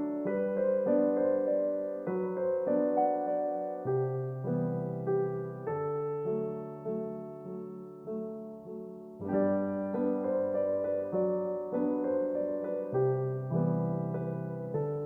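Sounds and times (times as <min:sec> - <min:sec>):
gentle piano melody: 0:00.0 - 0:15.0.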